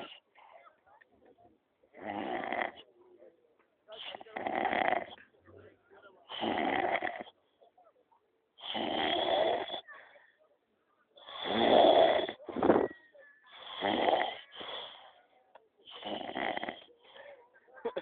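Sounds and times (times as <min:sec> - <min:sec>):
short snort: 0:00.0 - 0:00.2, 0:04.0 - 0:05.2, 0:06.3 - 0:07.3, 0:08.6 - 0:09.8, 0:11.2 - 0:12.9, 0:13.5 - 0:15.2, 0:15.9 - 0:16.9
man snoring: 0:02.0 - 0:02.8, 0:04.4 - 0:05.2, 0:06.3 - 0:07.3, 0:08.6 - 0:09.8, 0:11.2 - 0:12.9, 0:13.6 - 0:14.5, 0:15.9 - 0:16.9.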